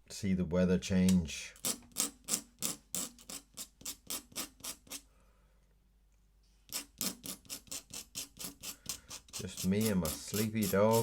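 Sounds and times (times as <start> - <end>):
pen nib scratching paper: 1.6 - 5.0, 6.7 - 11.0.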